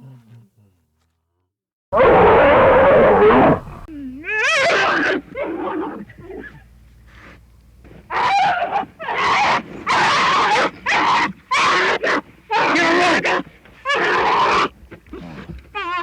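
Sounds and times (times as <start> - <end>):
bear grunting: 2.0 - 3.9
bear harsh cries: 2.0 - 6.6, 8.1 - 14.8, 15.7 - 16.0.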